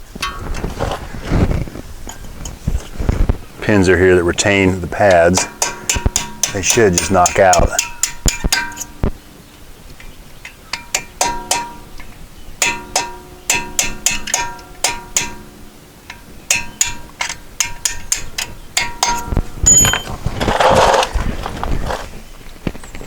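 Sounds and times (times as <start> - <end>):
hammer striking metal punch: 5.0 - 9.0, 10.7 - 12.0, 12.6 - 20.0.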